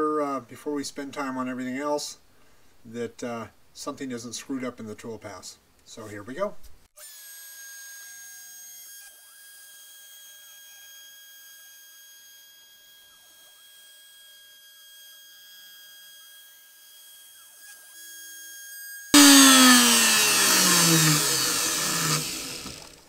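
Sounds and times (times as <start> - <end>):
loud sound with falling pitch: 19.2 - 22.8
high-pitched motor whine: 19.2 - 23.0.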